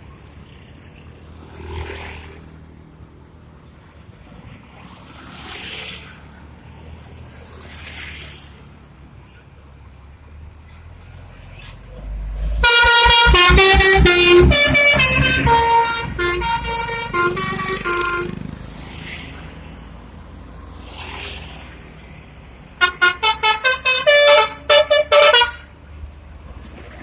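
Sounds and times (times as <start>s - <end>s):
musical bus air horn: 12.0s - 18.5s, 22.8s - 25.7s.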